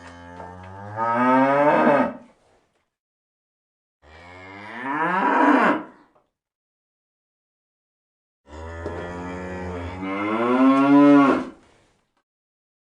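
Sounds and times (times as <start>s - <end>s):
cattle mooing: 8.5s - 11.6s.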